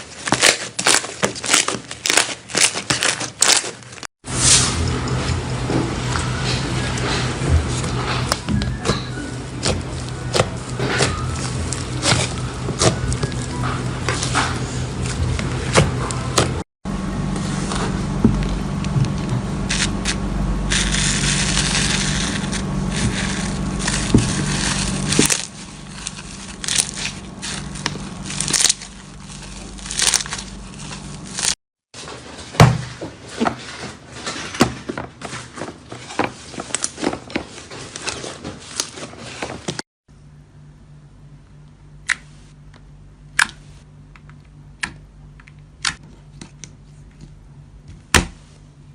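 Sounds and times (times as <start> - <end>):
slime crackling and popping: 19.7 - 31.6.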